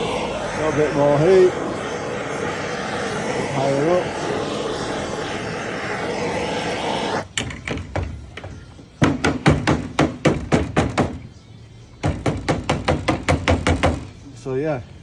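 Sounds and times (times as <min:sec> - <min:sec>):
blowtorch flame hissing: 0:00.0 - 0:07.4.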